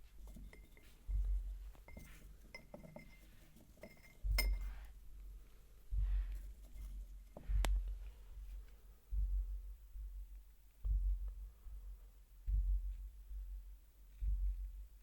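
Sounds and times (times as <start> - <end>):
dull low thumps: 1.0 - 2.6, 4.2 - 15.0
glass clinks: 1.9 - 4.8.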